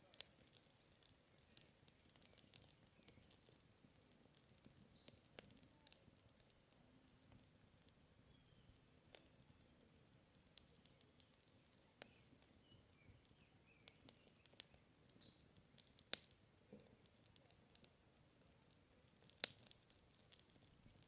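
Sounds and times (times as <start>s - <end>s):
campfire crackling: 0.0s - 21.0s
bird singing high warble: 4.3s - 5.1s, 10.1s - 15.4s.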